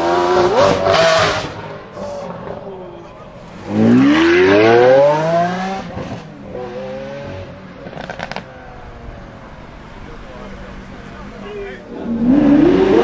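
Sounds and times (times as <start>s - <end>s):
car engine accelerating hard: 0.0s - 13.0s
exhaust pops: 7.8s - 8.5s.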